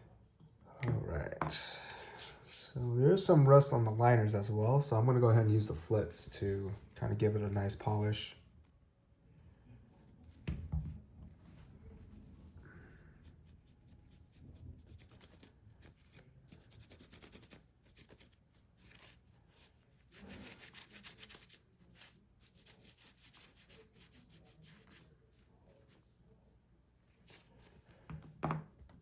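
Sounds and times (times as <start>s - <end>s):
cloth rubbing on metal: 16.9s - 26.0s.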